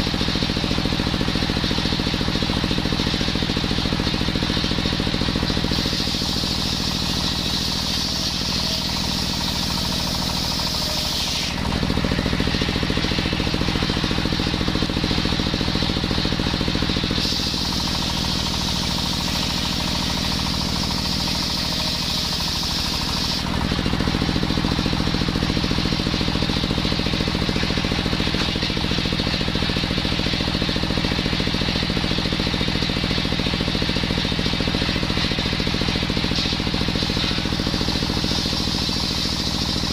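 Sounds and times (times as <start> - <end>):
circular saw engine running: 0.0 - 39.9
saw blade cutting wood: 5.6 - 14.2, 16.3 - 23.5, 34.9 - 39.9.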